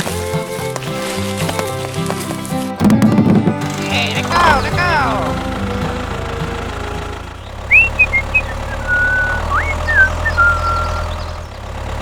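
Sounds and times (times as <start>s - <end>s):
small motor humming: 0.9s - 12.0s
high whistling tones: 2.8s - 11.4s.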